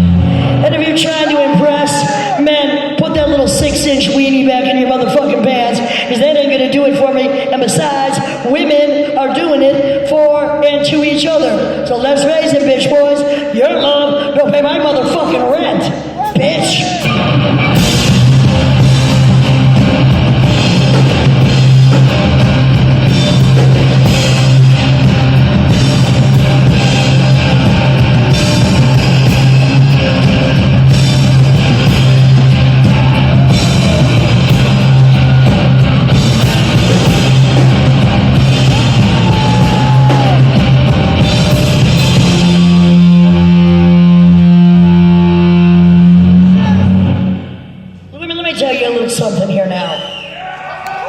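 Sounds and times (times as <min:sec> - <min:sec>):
low bass note: 0:00.0 - 0:01.0, 0:17.1 - 0:48.0
rock band playing: 0:00.0 - 0:07.1, 0:14.6 - 0:48.0
electric guitar: 0:00.0 - 0:07.5, 0:15.8 - 0:48.1
drums: 0:00.0 - 0:51.0.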